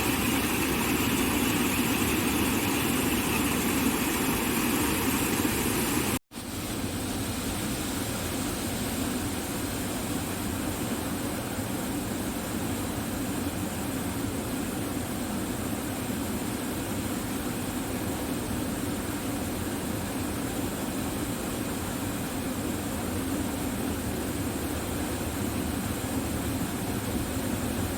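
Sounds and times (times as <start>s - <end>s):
water flowing: 0.0s - 10.6s.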